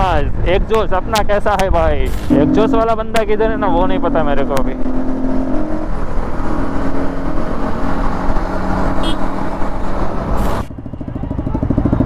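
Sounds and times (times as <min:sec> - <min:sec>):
wind rush on microphone: 0:00.0 - 0:03.3
motorcycle engine running: 0:02.3 - 0:12.0.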